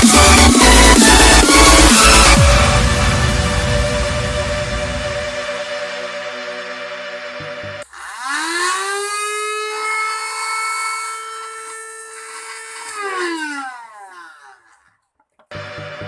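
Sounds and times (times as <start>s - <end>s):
small electric saw motor whining: 7.8s - 16.0s.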